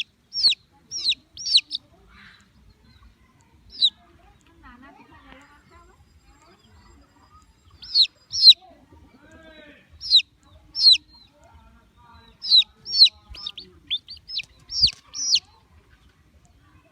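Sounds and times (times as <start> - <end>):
baby chicks peeping: 0.0 - 16.9.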